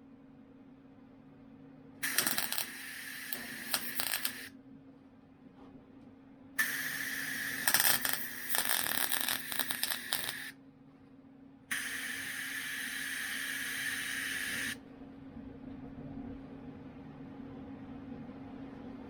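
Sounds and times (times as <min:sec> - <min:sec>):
welding arc crackling: 0:02.0 - 0:04.5, 0:06.6 - 0:10.5, 0:11.7 - 0:14.8.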